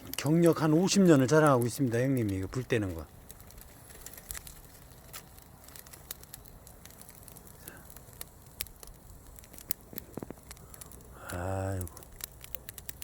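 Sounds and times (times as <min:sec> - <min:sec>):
sharp pops from fire: 0:00.0 - 0:13.0
wood fire crackling: 0:00.0 - 0:13.0.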